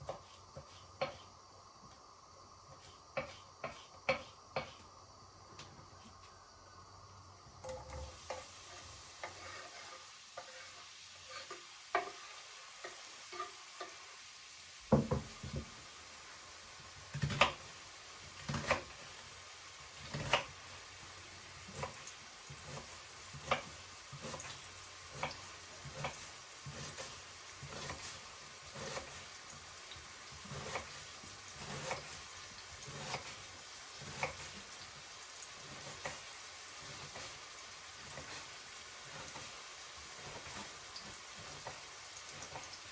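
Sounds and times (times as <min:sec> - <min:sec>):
food sizzling in frying pan: 0:06.4 - 0:42.9
utensil scraping pan: 0:07.6 - 0:14.0, 0:21.6 - 0:29.7, 0:30.3 - 0:34.7, 0:35.6 - 0:42.9.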